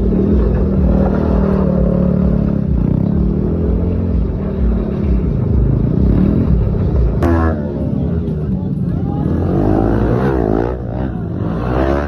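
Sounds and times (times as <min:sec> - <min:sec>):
atv engine revving: 0:00.0 - 0:08.3.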